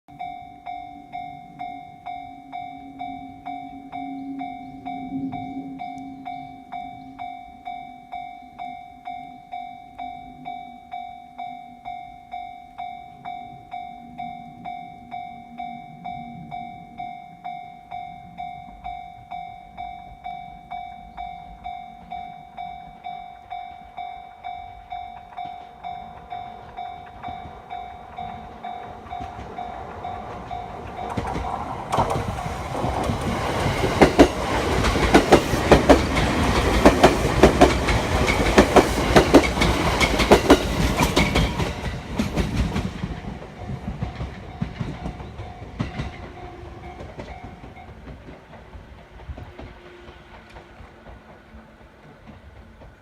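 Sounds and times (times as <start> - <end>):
electric train rushing: 0.1 - 53.0
train wheels clacking over rail joints: 25.1 - 53.0.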